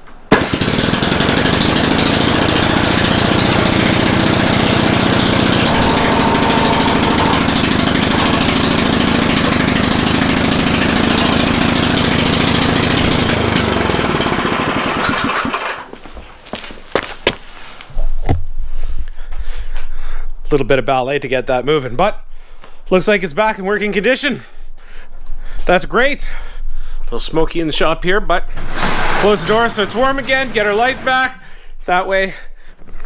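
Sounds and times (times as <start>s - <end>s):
snowblower engine running: 0.3s - 15.9s, 28.8s - 31.1s.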